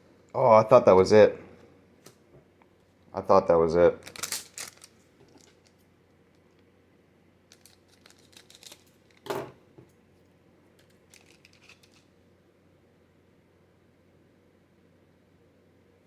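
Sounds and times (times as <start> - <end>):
foil card pack crinkling: 4.0 - 5.8, 7.5 - 9.3, 10.8 - 12.1.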